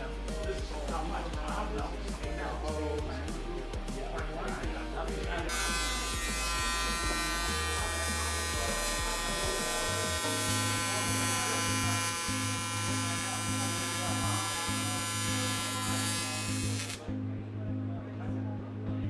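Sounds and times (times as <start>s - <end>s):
welding arc buzzing: 5.5s - 17.1s.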